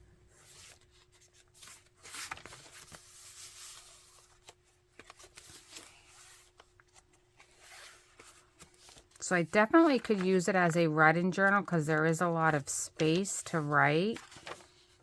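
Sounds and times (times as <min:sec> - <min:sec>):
paper pages rustling: 0:00.3 - 0:15.0.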